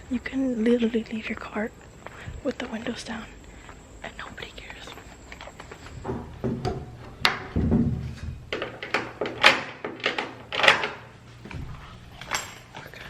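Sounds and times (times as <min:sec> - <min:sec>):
sharp clicks and knocks: 0:05.4 - 0:12.6
dull thump: 0:06.0 - 0:08.5.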